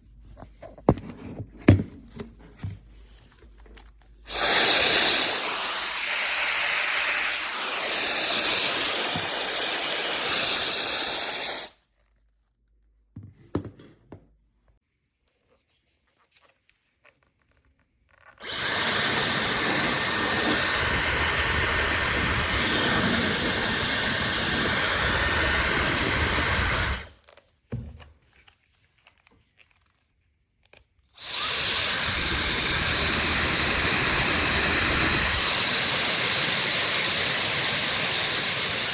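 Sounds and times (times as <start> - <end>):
hair dryer blowing: 4.3 - 11.8, 18.4 - 27.1, 31.2 - 38.9.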